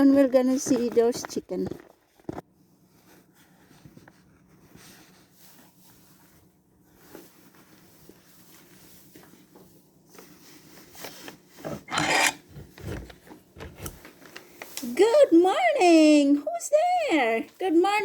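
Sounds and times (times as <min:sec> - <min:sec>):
scraping and rubbing: 0:11.6 - 0:14.0.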